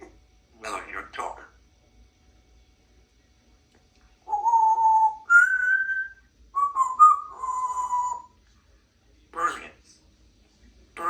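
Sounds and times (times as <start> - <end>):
parrot whistling: 4.3 - 8.4.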